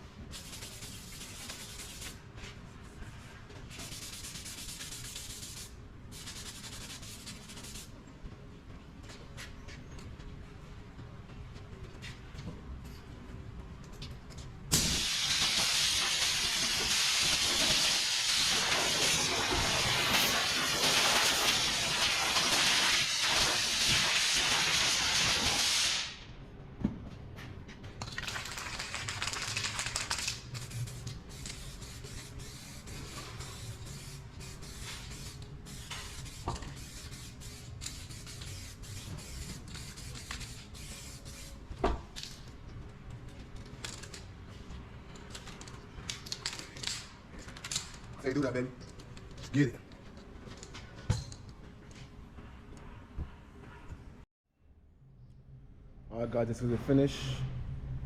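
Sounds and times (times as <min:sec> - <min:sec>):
compressed air spraying: 0:14.8 - 0:26.2, 0:30.6 - 0:41.5.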